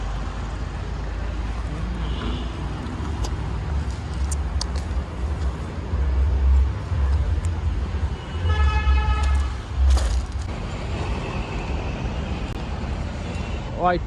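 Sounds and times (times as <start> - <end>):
road traffic rumbling: 0.0 - 14.0
vehicle horn: 2.0 - 2.6, 8.2 - 9.6.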